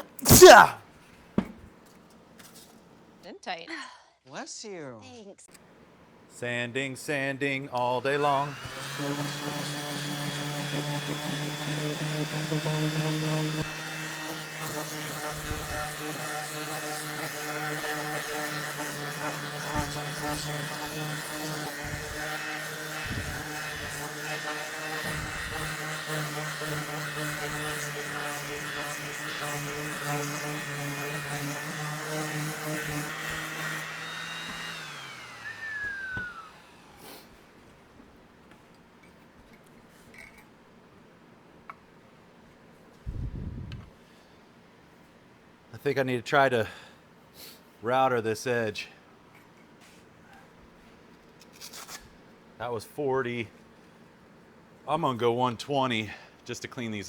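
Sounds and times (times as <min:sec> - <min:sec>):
electric sander humming and whining: 0:07.9 - 0:37.1
motor winding down whine: 0:33.7 - 0:37.0.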